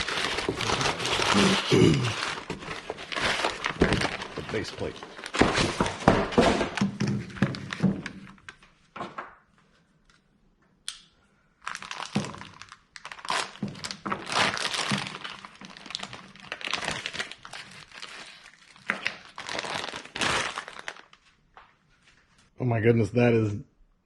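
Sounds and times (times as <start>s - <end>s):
packaging wrap crinkling and tearing: 0.0s - 8.6s, 11.6s - 21.2s.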